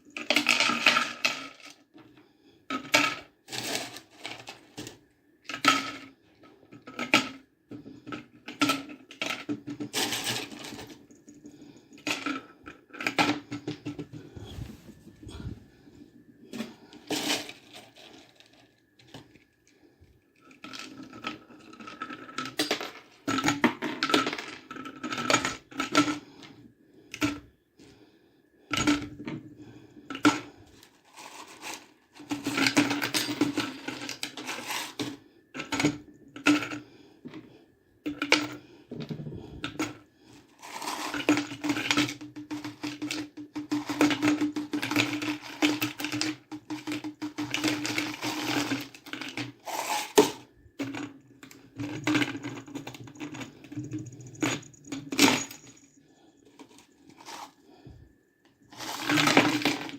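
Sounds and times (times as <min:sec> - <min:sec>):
hard objects clinking and clattering: 0:06.7 - 0:14.6, 0:30.1 - 0:37.5, 0:38.1 - 0:58.0, 0:58.6 - 0:59.9
steady low hum: 0:13.5 - 0:17.2.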